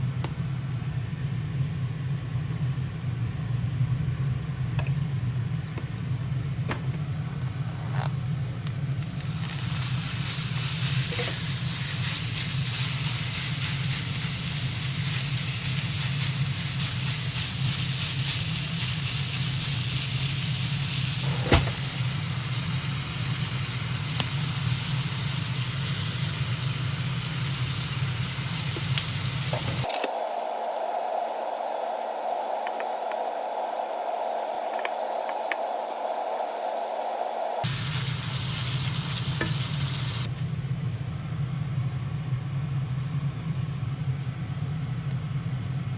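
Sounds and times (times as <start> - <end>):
constant low hum: 0.0 - 45.9
meat sizzling in a pan: 9.2 - 40.3.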